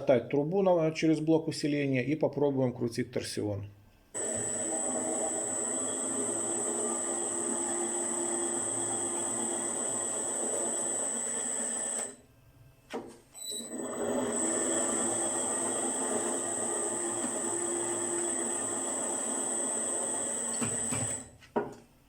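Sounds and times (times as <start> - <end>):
electric motor hum with high whine: 4.2 - 12.2, 13.7 - 21.2.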